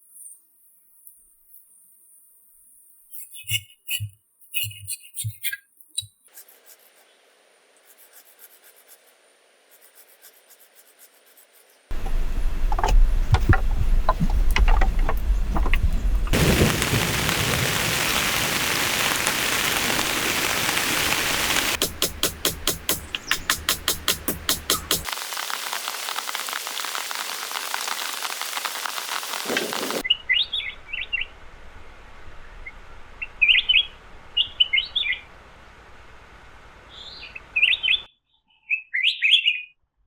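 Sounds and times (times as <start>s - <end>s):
sharp knocks: 11.9s - 16.4s
deep low rumble: 11.9s - 17.6s
heavy rain: 12.0s - 30.0s
steady rhythmic beat: 21.8s - 25.1s.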